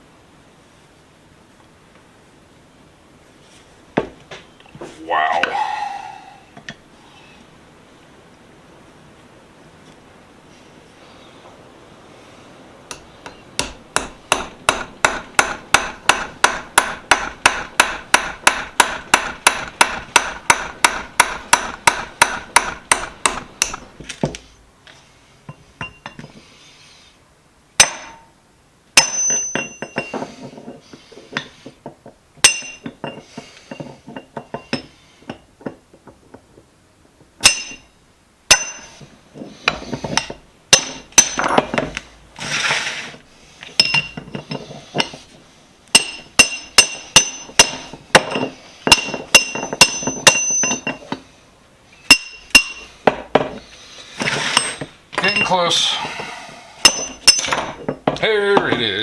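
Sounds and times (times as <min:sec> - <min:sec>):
metal clinks ringing: 0:29.0 - 0:30.2, 0:32.4 - 0:35.4, 0:37.4 - 0:37.9, 0:38.5 - 0:39.0, 0:43.8 - 0:45.2, 0:45.9 - 0:51.2, 0:52.0 - 0:53.0, 0:54.6 - 0:55.6, 0:56.8 - 0:57.8.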